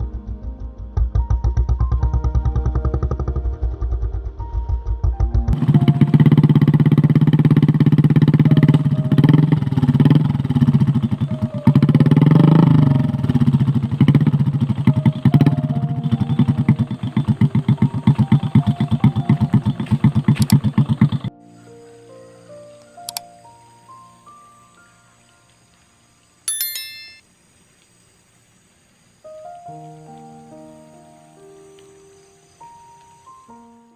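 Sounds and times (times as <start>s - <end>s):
small motorcycle engine revving: 1.1s - 4.8s, 5.6s - 21.3s.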